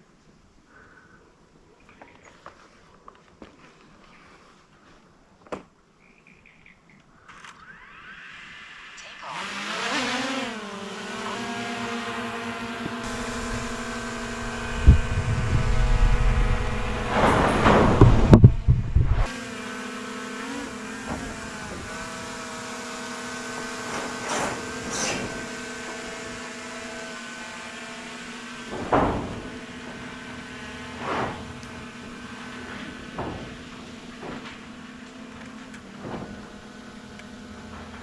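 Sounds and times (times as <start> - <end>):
mechanical hum with whine: 7.3 - 38.0
heavy rumbling and clattering: 12.7 - 19.3, 23.8 - 38.0
single knocks: 12.7 - 19.3.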